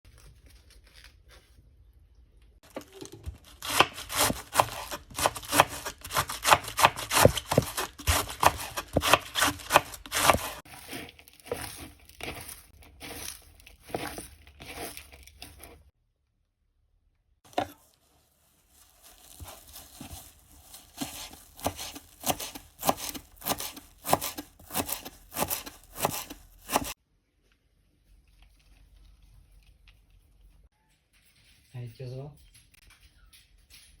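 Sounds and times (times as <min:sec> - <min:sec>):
crunchy vegetable cutting: 0:03.0 - 0:15.8, 0:19.0 - 0:27.0.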